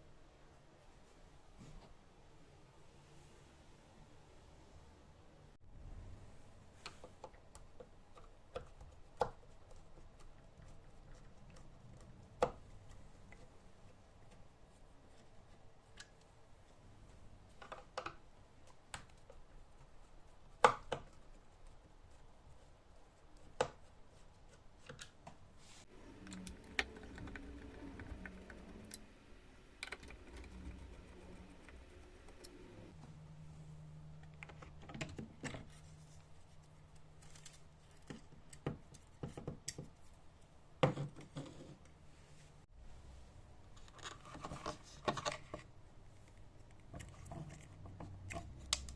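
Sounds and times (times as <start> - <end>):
small tools clicking and tapping: 25.9 - 29.1
low steady hum: 25.9 - 34.9.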